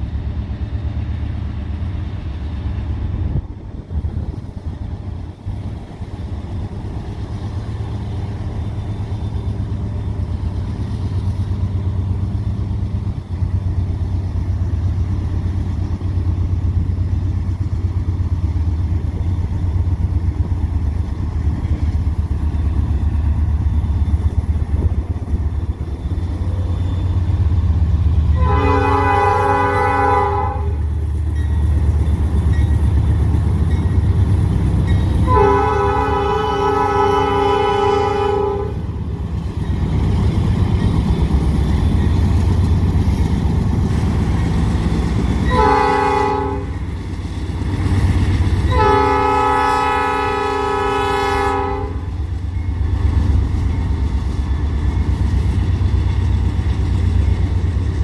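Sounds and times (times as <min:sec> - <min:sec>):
diesel locomotives rumbling: 0:00.0 - 0:58.0
locomotive air horn: 0:28.3 - 0:30.9, 0:35.2 - 0:38.9, 0:45.4 - 0:46.8, 0:48.7 - 0:52.2.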